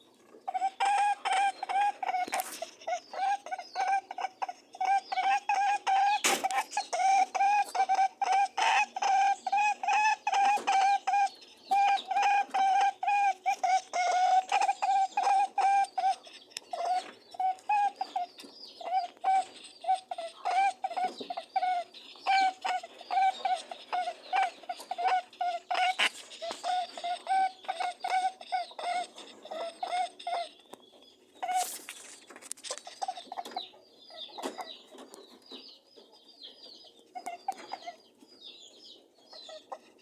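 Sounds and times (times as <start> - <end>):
rabbit honking: 0.5 - 30.6, 31.4 - 31.9.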